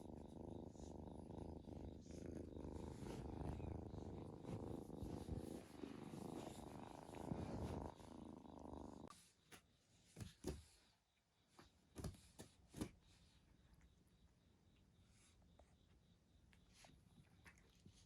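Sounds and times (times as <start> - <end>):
cat purring: 0.0 - 9.4.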